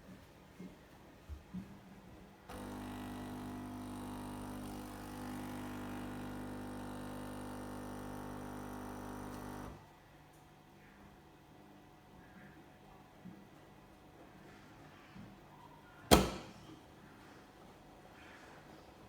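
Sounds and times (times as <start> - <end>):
espresso machine pump humming: 2.5 - 9.8.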